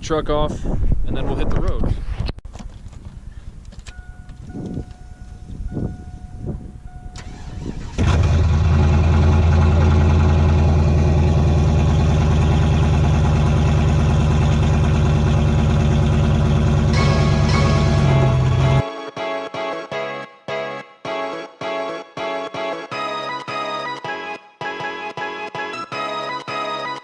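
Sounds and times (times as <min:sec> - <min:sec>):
car engine starting and idling: 0:07.0 - 0:18.8
background music: 0:16.9 - 0:27.0.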